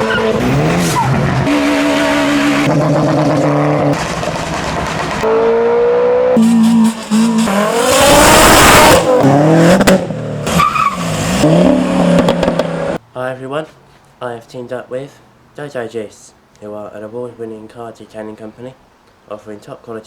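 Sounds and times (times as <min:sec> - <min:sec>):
car engines revving and accelerating: 0:00.0 - 0:13.0.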